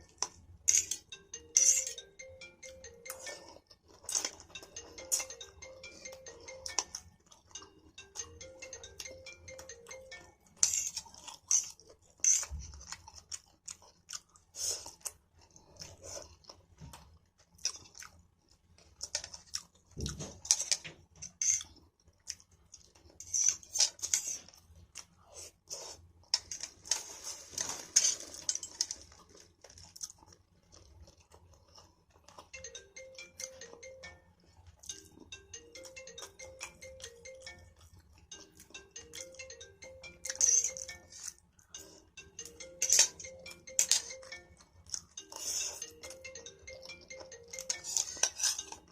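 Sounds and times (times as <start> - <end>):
soft background music: 0.0 - 11.5, 32.2 - 48.9
person chewing noodles: 0.0 - 48.9.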